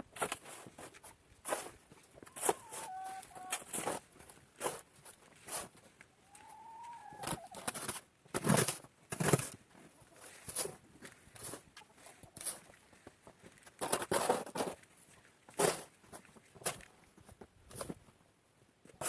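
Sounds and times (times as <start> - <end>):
footsteps: 0.2 - 18.1
animal calls: 2.3 - 3.7, 6.2 - 7.7.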